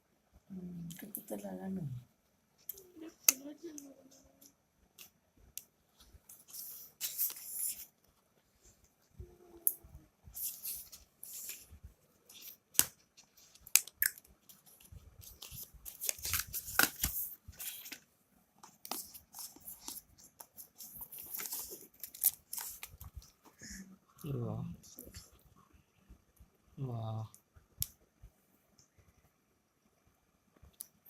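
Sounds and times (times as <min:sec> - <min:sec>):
packaging crinkling and tearing: 0:12.3 - 0:18.0, 0:18.8 - 0:23.2.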